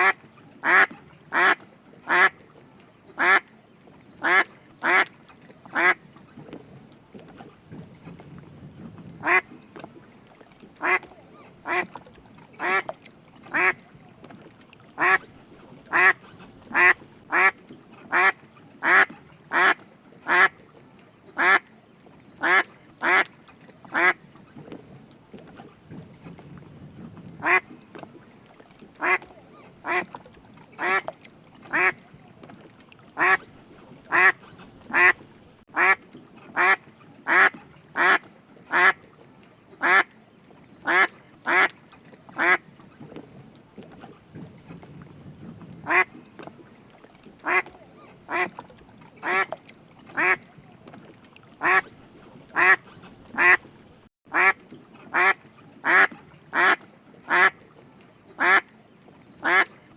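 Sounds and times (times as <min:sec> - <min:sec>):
duck quacking: 0:00.0 - 0:02.3, 0:03.2 - 0:03.4, 0:04.2 - 0:05.1, 0:05.8 - 0:06.0, 0:09.2 - 0:09.5, 0:10.8 - 0:11.0, 0:11.7 - 0:11.9, 0:12.6 - 0:12.9, 0:13.5 - 0:13.8, 0:15.0 - 0:15.2, 0:15.9 - 0:20.5, 0:22.4 - 0:23.3, 0:24.0 - 0:24.2, 0:27.4 - 0:27.6, 0:29.0 - 0:29.2, 0:29.8 - 0:30.0, 0:30.8 - 0:31.0, 0:31.7 - 0:32.0, 0:33.2 - 0:33.5, 0:34.1 - 0:35.2, 0:35.8 - 0:36.0, 0:36.6 - 0:39.0, 0:40.9 - 0:41.7, 0:45.9 - 0:46.1, 0:47.4 - 0:47.7, 0:48.3 - 0:48.5, 0:49.2 - 0:49.5, 0:50.2 - 0:50.4, 0:51.6 - 0:51.9, 0:52.6 - 0:53.6, 0:54.3 - 0:57.5, 0:59.4 - 0:59.7.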